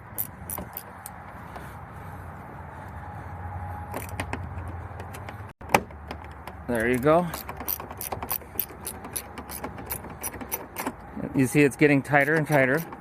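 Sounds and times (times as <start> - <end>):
ratchet wrench clicking: 0.1 - 1.2, 6.5 - 11.1, 12.1 - 13.0.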